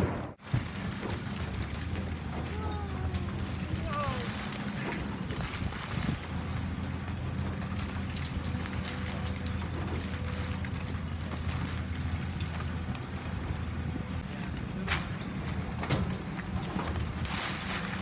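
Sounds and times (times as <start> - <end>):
sharp crack: 0.0 - 2.7
heavy machinery engine running: 0.0 - 18.0
wind on microphone: 5.0 - 6.4.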